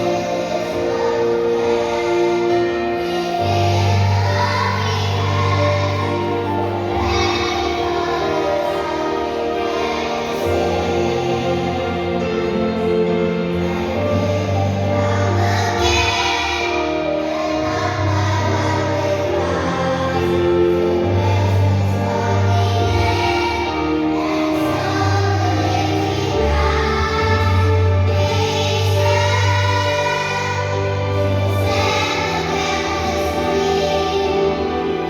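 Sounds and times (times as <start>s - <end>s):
choir singing a hymn: 0.0s - 35.0s.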